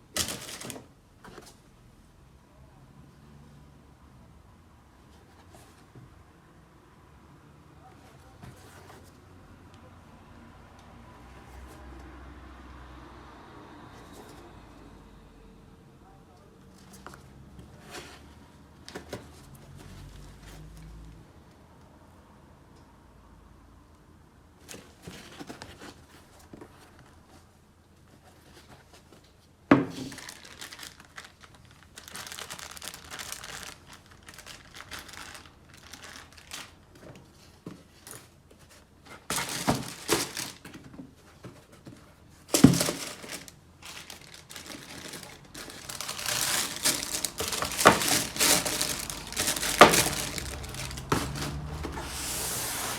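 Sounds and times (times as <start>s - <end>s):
paper crinkling and tearing: 30.0s - 36.8s, 39.3s - 40.7s, 42.5s - 52.9s.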